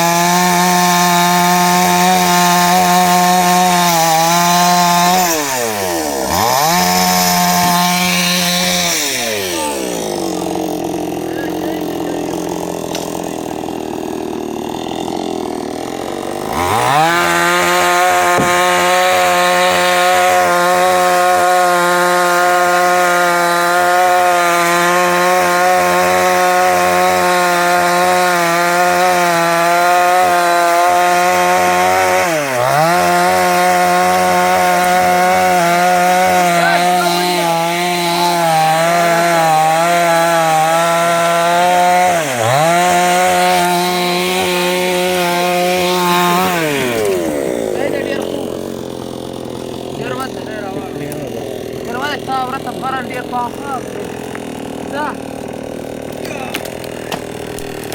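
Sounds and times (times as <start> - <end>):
chainsaw sawing through trunk: 0.0 - 57.9.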